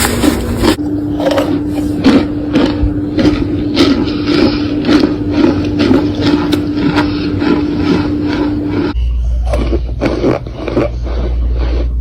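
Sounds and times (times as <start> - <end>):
brittle material crunching: 0.0 - 8.9
steady low hum: 0.0 - 12.0.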